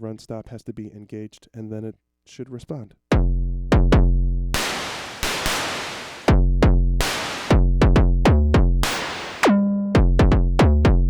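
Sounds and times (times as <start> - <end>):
synth kick drum hits: 3.2 - 10.4
synth snare hits: 4.6 - 6.4, 7.0 - 7.6, 8.8 - 9.6.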